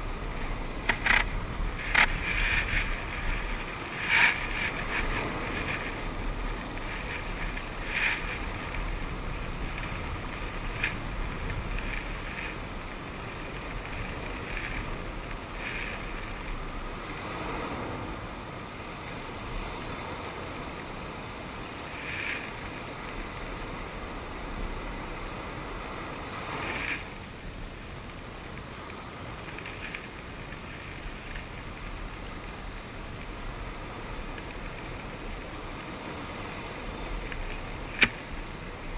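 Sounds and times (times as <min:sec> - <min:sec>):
ocean water washing: 0:00.0 - 0:38.9.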